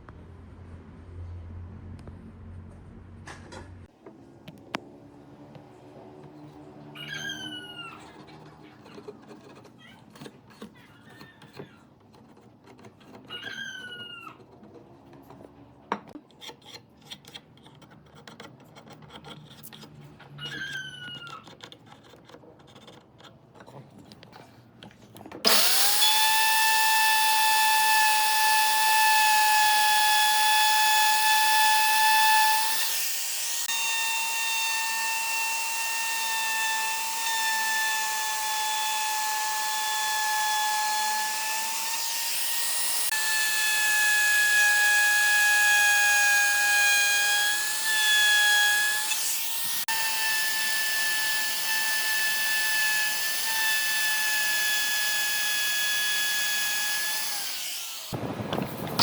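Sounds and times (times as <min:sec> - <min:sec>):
power tool high whine: 0:25.5 - 0:58.3.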